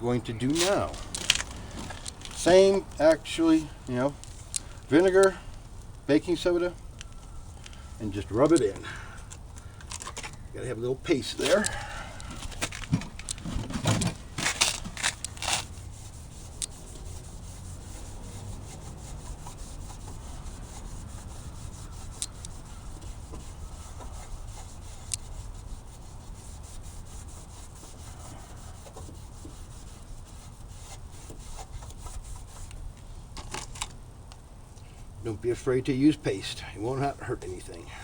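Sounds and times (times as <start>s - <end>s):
cloth scrubbing plastic: 12.3s - 32.8s.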